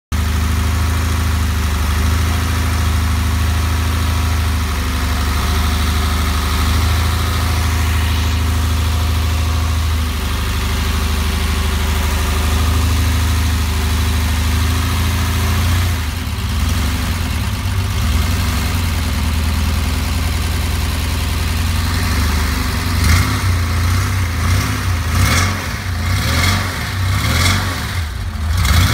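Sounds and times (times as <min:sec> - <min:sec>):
car engine running unevenly: 0:00.2 - 0:26.2
engine revving blips: 0:04.9 - 0:12.9, 0:23.0 - 0:28.9.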